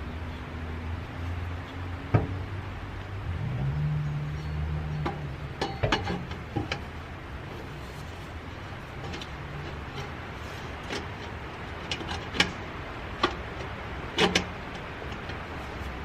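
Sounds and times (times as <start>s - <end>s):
metal knocks and clanks: 4.9s - 6.9s.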